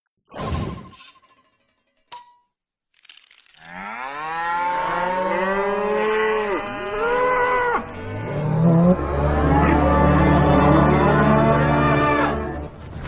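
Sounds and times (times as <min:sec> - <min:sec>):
loud low drone: 0:08.2 - 0:12.8.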